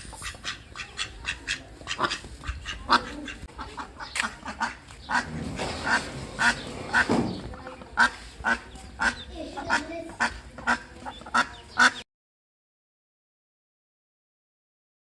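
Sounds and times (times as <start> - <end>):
ducks quacking: 0.2 - 12.0.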